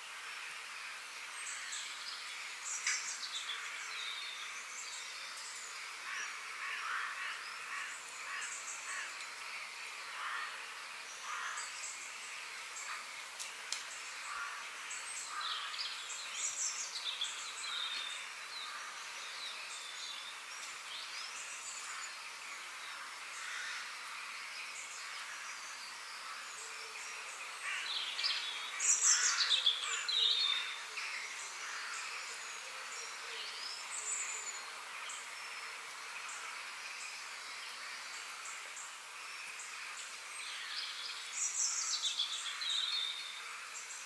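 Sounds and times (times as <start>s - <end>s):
steady high hiss: 0.0s - 44.0s
birds chirping and singing: 23.3s - 44.0s.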